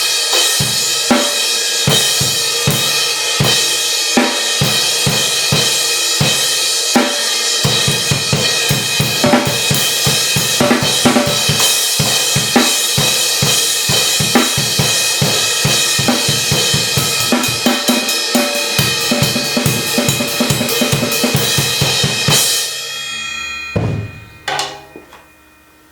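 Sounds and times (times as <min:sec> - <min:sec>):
drum kit groove: 0:00.0 - 0:25.4
crash ride cymbal ringing: 0:21.1 - 0:25.9.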